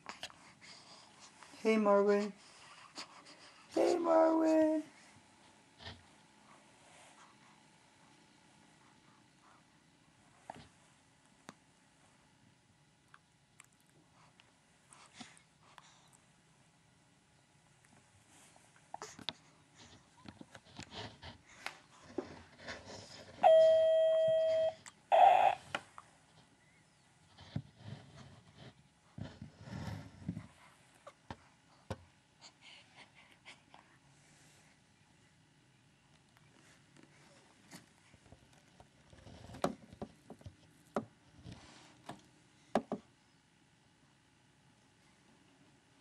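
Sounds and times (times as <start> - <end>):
faint clicks and rustling: 18.7 - 23.4.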